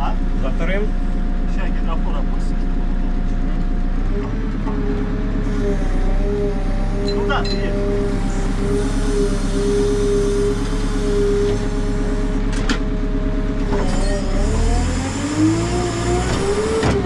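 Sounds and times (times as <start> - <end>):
diesel engine revving: 5.1 - 17.0.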